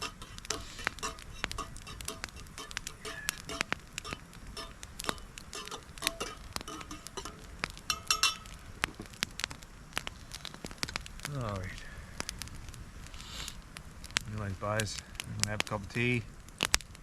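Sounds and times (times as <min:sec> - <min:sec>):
metallic clinking: 0:00.0 - 0:08.6
campfire crackling and snapping: 0:00.0 - 0:17.0.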